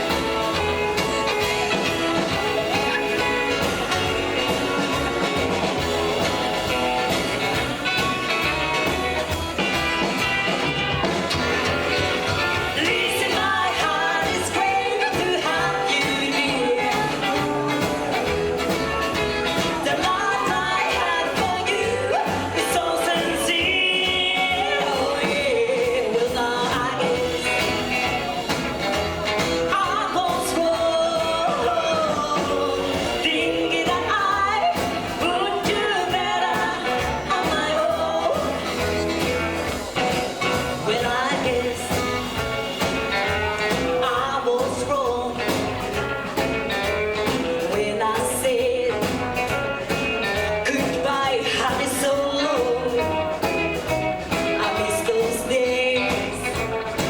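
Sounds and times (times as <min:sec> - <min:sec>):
rockabilly band playing: 0:00.0 - 0:57.0
woman singing: 0:12.6 - 0:28.6, 0:29.4 - 0:39.3, 0:40.0 - 0:46.1, 0:46.7 - 0:57.0.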